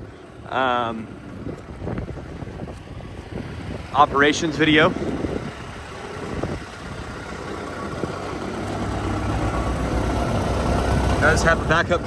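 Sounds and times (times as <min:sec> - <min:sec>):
excavator diesel engine idling: 0:00.0 - 0:12.0.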